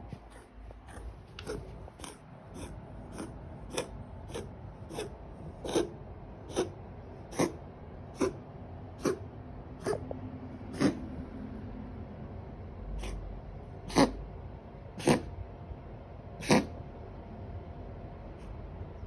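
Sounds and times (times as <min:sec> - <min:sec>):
cat coughing: 0:00.0 - 0:07.6, 0:08.2 - 0:08.4, 0:09.0 - 0:09.2, 0:09.8 - 0:10.0, 0:10.7 - 0:11.0, 0:13.0 - 0:13.2, 0:13.9 - 0:14.2, 0:15.0 - 0:15.3, 0:16.4 - 0:16.8.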